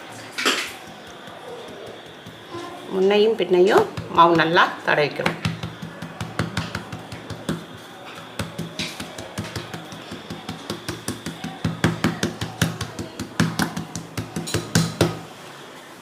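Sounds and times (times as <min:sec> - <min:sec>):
rolling pin knocking on board: 0:03.7 - 0:04.5, 0:05.2 - 0:15.2.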